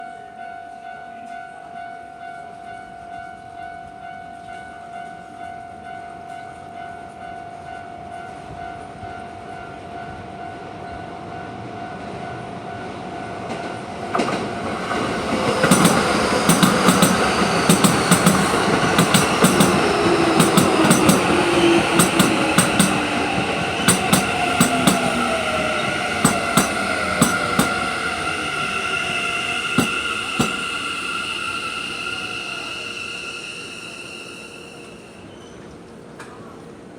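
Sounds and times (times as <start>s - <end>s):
electric train whine: 0.0s - 36.9s
train wheels clacking on rail joints: 13.5s - 31.8s
level crossing alarm ringing: 14.6s - 35.2s.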